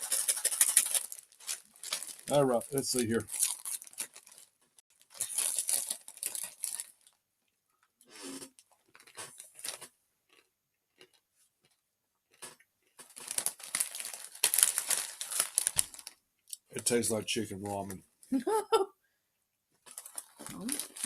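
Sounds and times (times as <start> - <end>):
dry noodles crunched and chewed: 0.0 - 2.4, 3.2 - 7.2, 8.4 - 16.6, 19.8 - 21.0.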